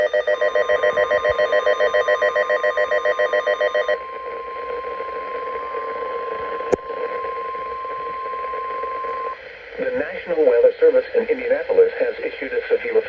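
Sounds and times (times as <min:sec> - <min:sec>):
steady warning alarm tone: 0:00.0 - 0:09.4
radio static: 0:09.1 - 0:13.0.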